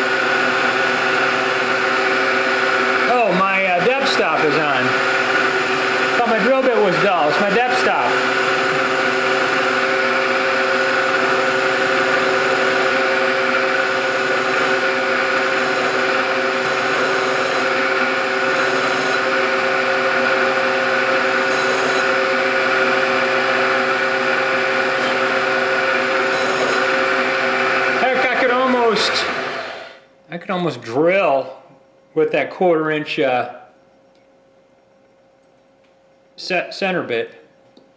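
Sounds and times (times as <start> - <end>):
milling machine spindle whining: 0.0 - 30.0.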